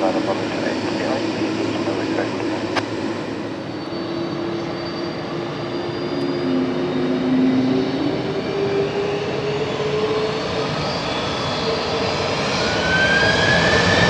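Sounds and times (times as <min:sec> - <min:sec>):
jet engines roaring and whining: 0:00.0 - 0:14.0.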